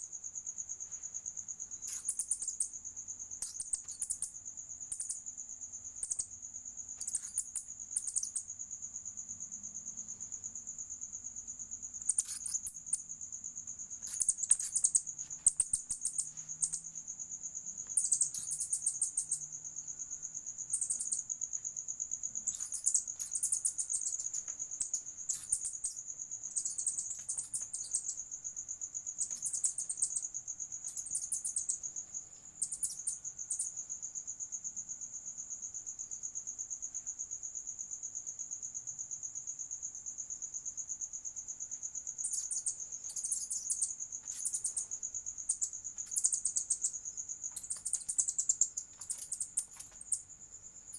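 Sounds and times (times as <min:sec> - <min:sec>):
insect trill: 0:00.0 - 0:50.9
high-pitched chirping bursts: 0:01.9 - 0:02.7, 0:03.4 - 0:05.2, 0:07.0 - 0:08.4, 0:12.0 - 0:13.0, 0:14.0 - 0:16.9, 0:17.9 - 0:19.4, 0:22.5 - 0:28.2.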